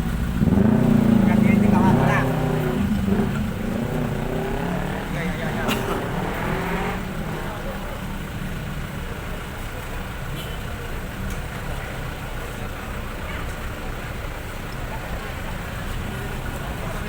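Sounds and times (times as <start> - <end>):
road traffic noise: 0.0 - 17.0
vehicle engine rumble: 0.0 - 17.0.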